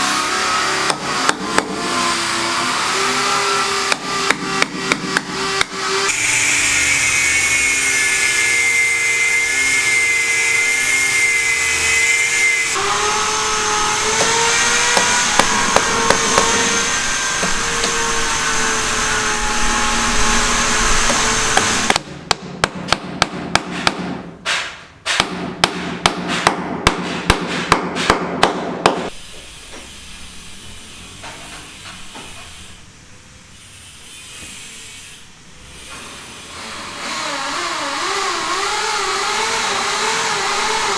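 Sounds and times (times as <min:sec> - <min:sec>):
hammer blows: 0:03.6 - 0:29.9.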